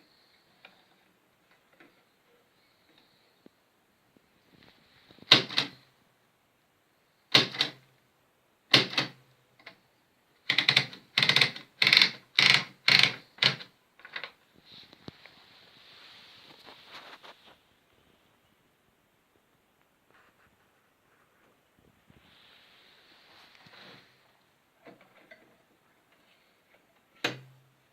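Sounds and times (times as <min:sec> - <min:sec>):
typewriter clacking strokes: 0:05.2 - 0:05.8, 0:07.3 - 0:07.8, 0:08.7 - 0:09.2.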